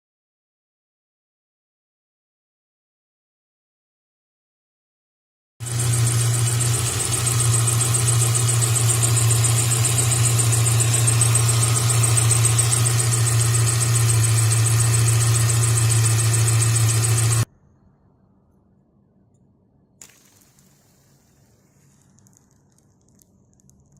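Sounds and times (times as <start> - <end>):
car engine idling: 5.6 - 17.5
high-pitched pulsing belt squeal: 5.6 - 17.5.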